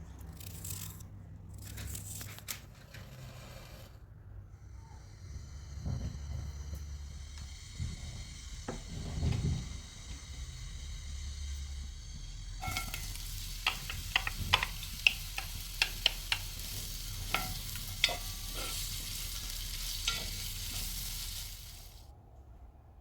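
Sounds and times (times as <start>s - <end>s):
food sizzling in a pan: 7.0s - 22.0s
utensil scraping a pan: 12.6s - 22.0s.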